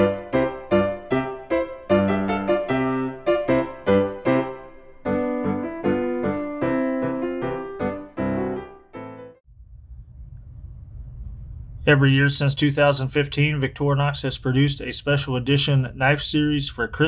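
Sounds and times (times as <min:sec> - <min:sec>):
piano music: 0:00.0 - 0:09.4.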